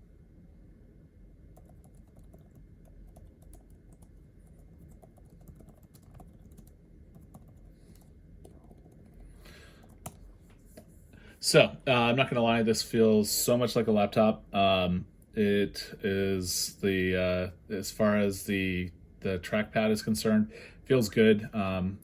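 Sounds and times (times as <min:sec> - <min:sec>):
keyboard and trackpad clicking: 0:01.6 - 0:09.2.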